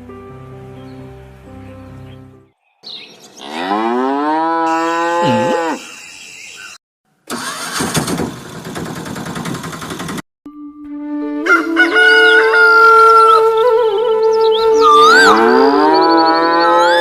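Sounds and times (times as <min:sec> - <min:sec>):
cow mooing: 0:03.4 - 0:06.0, 0:15.1 - 0:17.0.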